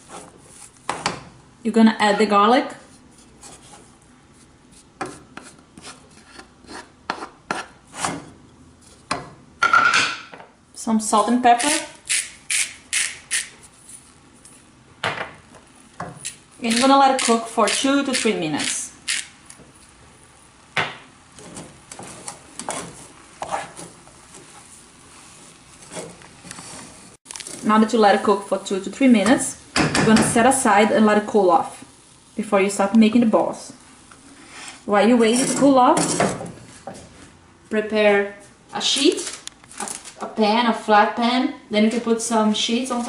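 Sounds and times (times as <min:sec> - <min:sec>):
utensil scraping a pan: 0:02.0 - 0:08.3, 0:21.4 - 0:27.2.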